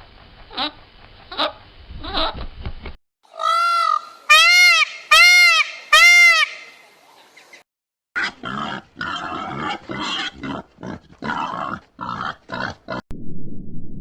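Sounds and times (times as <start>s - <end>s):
pig grunting: 8.2s - 13.0s
low steady rumbling: 13.1s - 14.0s.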